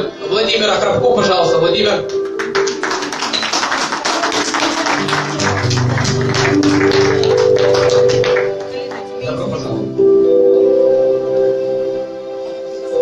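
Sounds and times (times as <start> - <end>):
music with held chords: 1.3 - 13.0
congregation clapping: 2.0 - 9.5.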